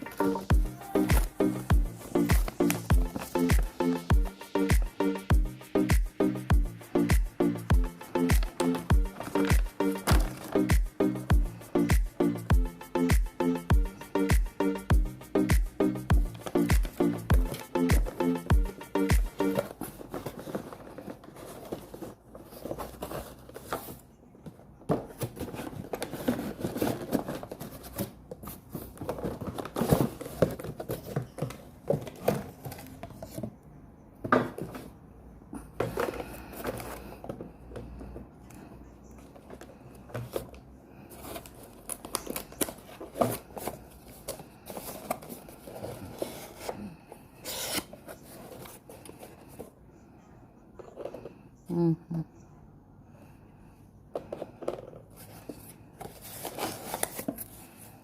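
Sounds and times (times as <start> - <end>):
packaging rustling and tearing: 8.3 - 10.8, 25.2 - 33.0, 41.2 - 46.8, 56.1 - 57.8.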